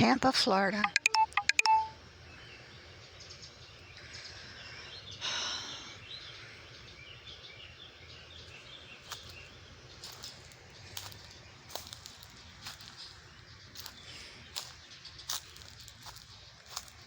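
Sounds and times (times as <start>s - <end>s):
low background hum: 0.0s - 17.0s
birds chirping and calling: 2.3s - 17.0s.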